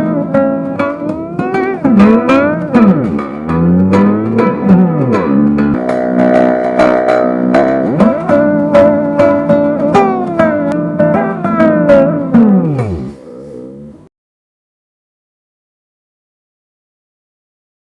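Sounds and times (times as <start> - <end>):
music with steady beat: 0.0 - 14.0
plucked sliding guitar-like lead: 0.0 - 14.1.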